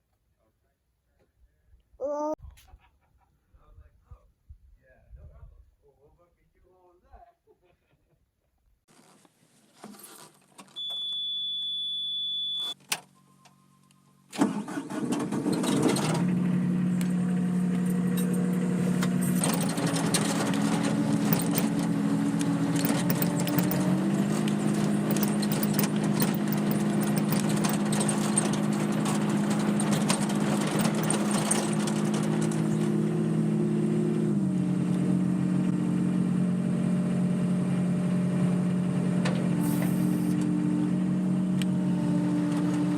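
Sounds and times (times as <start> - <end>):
warning beep: 10.8 - 13.4
engine cranking and running: 14.3 - 35.7.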